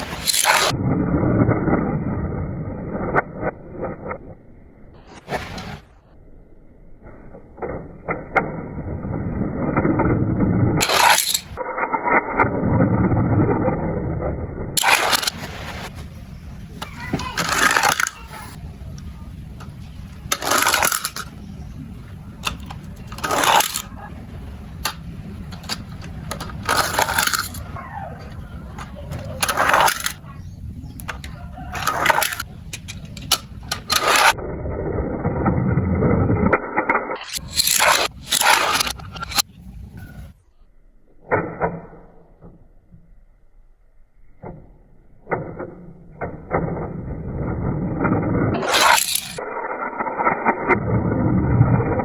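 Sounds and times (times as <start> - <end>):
hard plastic clicks and clatters: 30.9 - 34.3.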